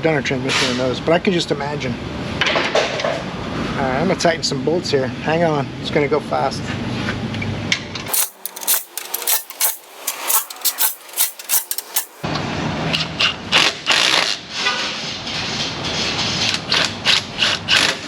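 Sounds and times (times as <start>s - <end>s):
wrench and ratchet clicking: 8.1s - 12.2s.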